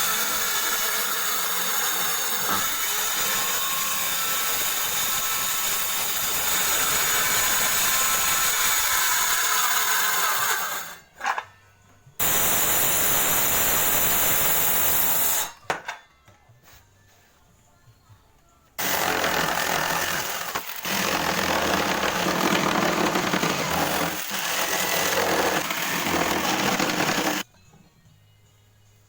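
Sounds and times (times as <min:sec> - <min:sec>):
table saw whining: 0:00.0 - 0:11.1, 0:18.8 - 0:27.4.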